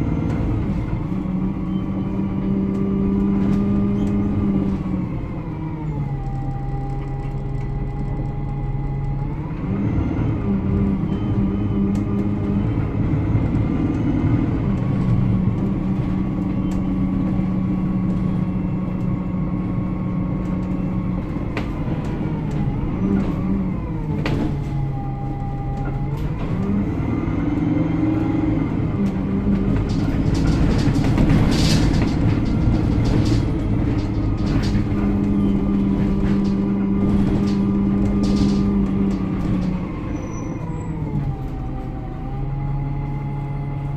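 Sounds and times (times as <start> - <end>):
bus diesel engine: 0.0 - 43.9
high-pitched squeaks and rattles: 29.4 - 41.0.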